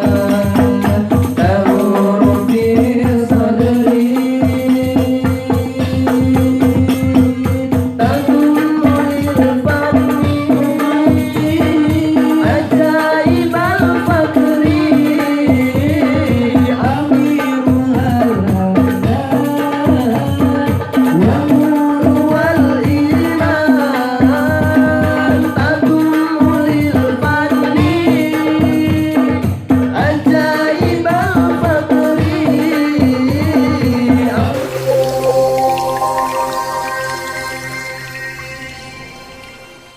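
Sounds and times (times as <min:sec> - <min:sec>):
person singing: 0:00.0 - 0:18.4, 0:31.4 - 0:38.2
frame drums playing fast rhythm: 0:00.0 - 0:38.1.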